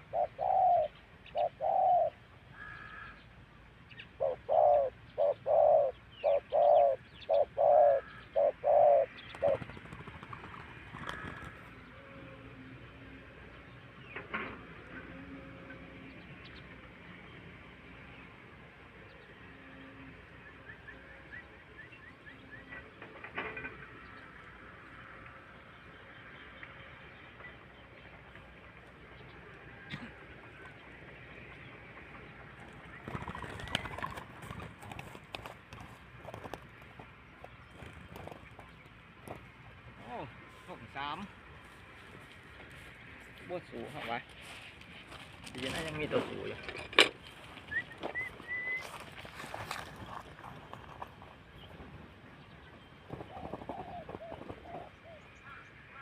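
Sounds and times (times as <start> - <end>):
dove cooing: 0.0 - 3.1, 4.1 - 12.5, 53.1 - 55.6
small birds chirping: 0.0 - 12.3.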